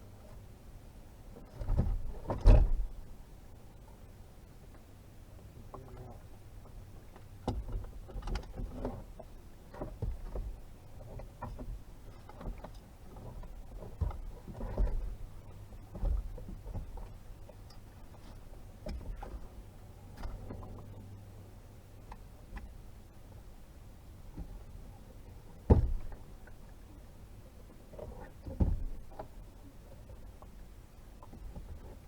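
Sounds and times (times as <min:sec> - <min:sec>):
knocks and clunks of gear: 0:01.5 - 0:02.9, 0:07.2 - 0:15.2, 0:15.9 - 0:19.5, 0:20.1 - 0:20.9, 0:25.6 - 0:26.6, 0:27.9 - 0:29.4.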